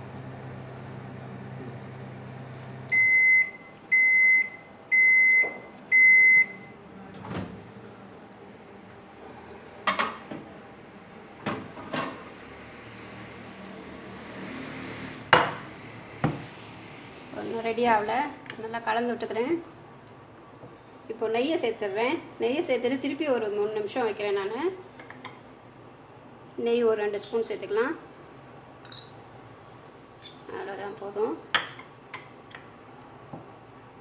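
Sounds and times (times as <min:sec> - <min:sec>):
microwave oven humming: 0:00.0 - 0:34.0
microwave beeps: 0:02.9 - 0:06.8.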